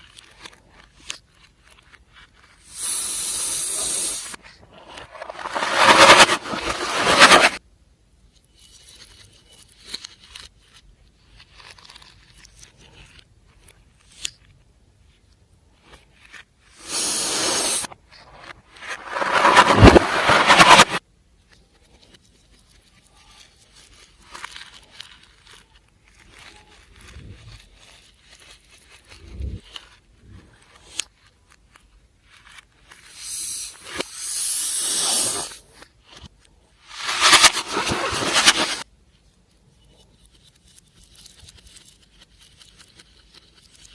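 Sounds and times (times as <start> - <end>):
loud steady hiss: 2.7 - 4.4, 16.8 - 17.9, 33.1 - 35.6
materials crinkling and scraping: 3.7 - 7.6, 15.8 - 21.0, 21.8 - 34.1, 35.0 - 38.9.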